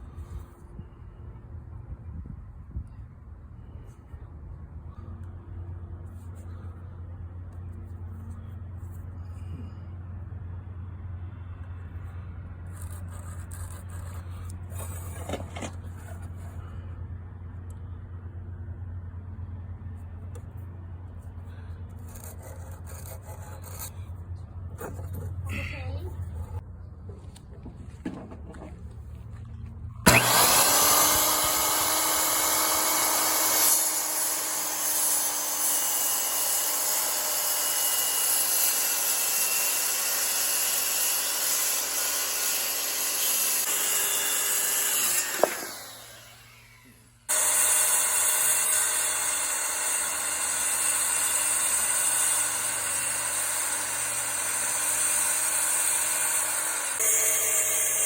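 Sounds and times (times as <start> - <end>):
electric saw running: 30.1 - 58.0.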